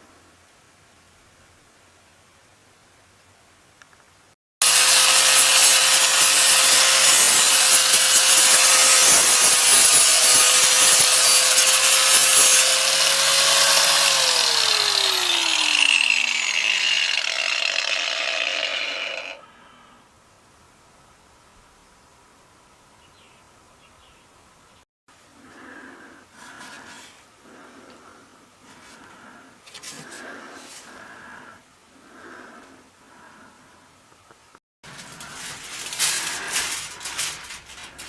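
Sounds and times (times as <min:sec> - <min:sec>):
power tool motor whine: 0:04.6 - 0:19.4.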